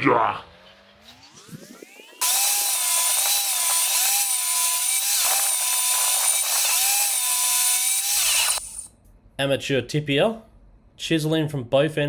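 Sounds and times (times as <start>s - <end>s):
power tool cutting wood: 1.1s - 8.9s.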